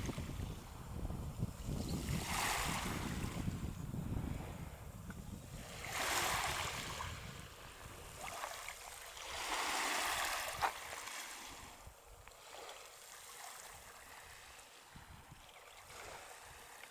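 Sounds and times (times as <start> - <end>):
waves washing over pebbles: 5.8 - 11.8.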